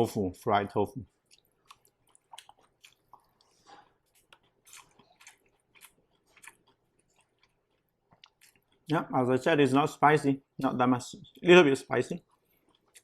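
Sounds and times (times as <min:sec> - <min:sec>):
person chewing wetly: 0:01.0 - 0:08.9, 0:12.1 - 0:13.0.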